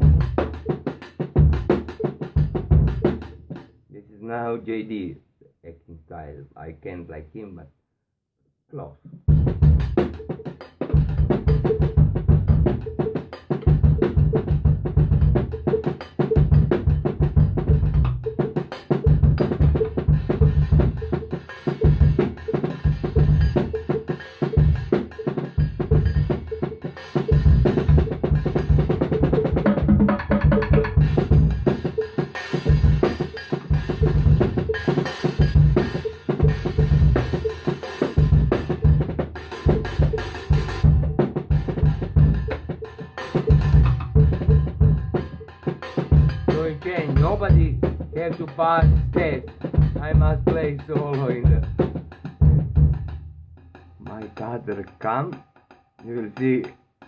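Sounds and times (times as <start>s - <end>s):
drum kit groove: 0.0s - 3.7s, 9.3s - 57.0s
cymbals: 15.2s - 29.9s, 30.9s - 52.4s.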